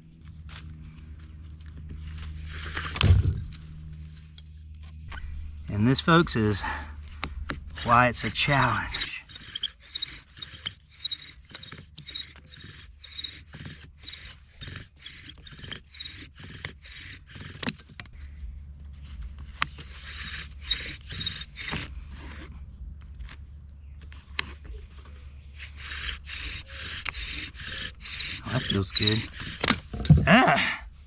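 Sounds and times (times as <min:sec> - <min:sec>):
bow drill spindle grinding: 0:00.4 - 0:18.2, 0:19.3 - 0:22.5, 0:24.4 - 0:31.0
small high squeaks: 0:07.2 - 0:18.1, 0:19.7 - 0:22.6, 0:23.8 - 0:30.4.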